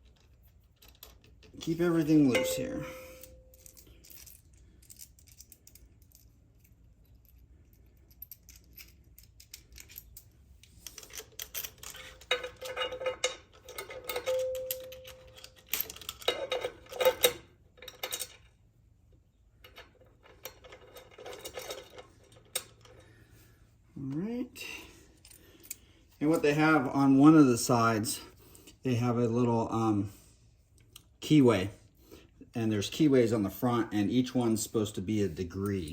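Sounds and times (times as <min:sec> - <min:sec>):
metal hardware clinking: 0:00.0 - 0:18.6, 0:19.6 - 0:23.2, 0:35.5 - 0:35.9.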